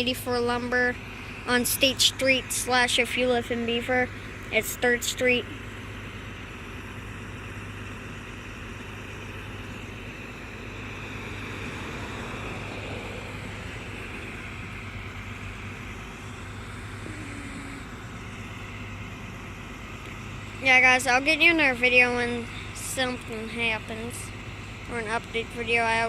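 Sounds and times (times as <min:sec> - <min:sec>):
low steady hum: 0:00.0 - 0:26.0
road traffic noise: 0:00.0 - 0:26.0
vehicle passing by: 0:09.5 - 0:19.4.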